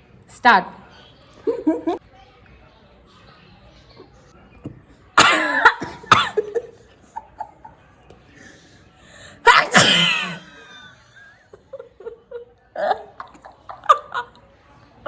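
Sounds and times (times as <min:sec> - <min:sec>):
person coughing: 0:05.2 - 0:06.6, 0:09.5 - 0:10.8.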